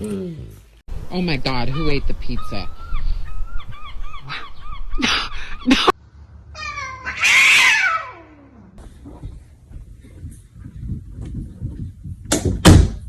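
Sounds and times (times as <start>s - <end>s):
cat meowing: 6.6s - 8.6s.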